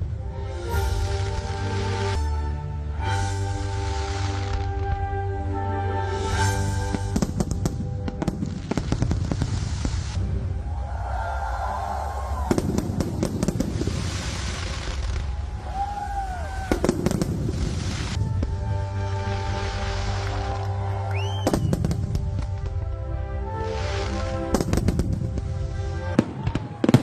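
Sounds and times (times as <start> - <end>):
fireworks sizzling hiss: 0.6 - 2.3, 3.1 - 5.0, 6.0 - 10.5, 11.7 - 26.2
fireworks bangs and crackles: 3.0 - 5.1, 6.4 - 27.0
fireworks whistles: 12.4 - 18.3, 19.2 - 22.3.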